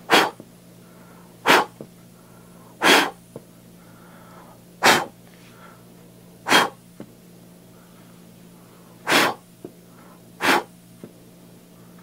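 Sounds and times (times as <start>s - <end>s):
sharp puffs of breath: 0.0s - 3.2s, 3.8s - 5.8s, 6.5s - 6.8s, 9.0s - 10.7s.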